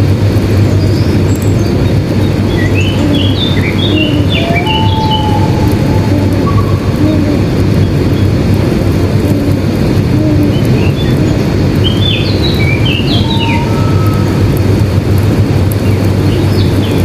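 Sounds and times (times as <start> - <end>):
loud steady low rumble: 0.0 - 17.0
birds chirping: 0.6 - 8.4, 10.2 - 14.5, 15.8 - 17.0.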